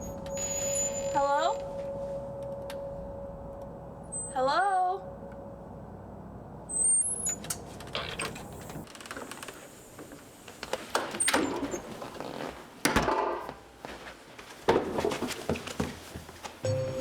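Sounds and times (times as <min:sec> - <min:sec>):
rustling handling sounds: 0:00.1 - 0:03.2.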